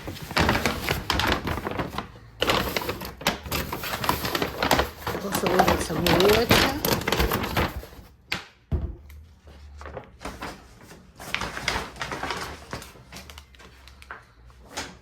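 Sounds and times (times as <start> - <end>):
packaging rustling: 0.0 - 8.3, 9.7 - 15.0
items knocking on surface: 8.7 - 9.0.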